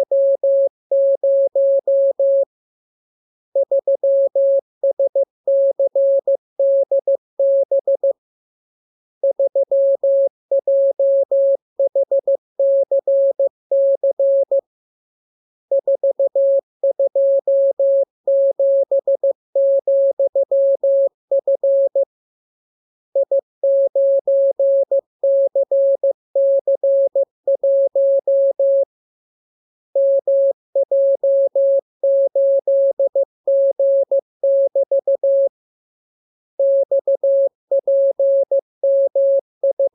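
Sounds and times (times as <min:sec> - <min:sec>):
morse code tone: 0:00.0 - 0:02.4, 0:36.6 - 0:39.9.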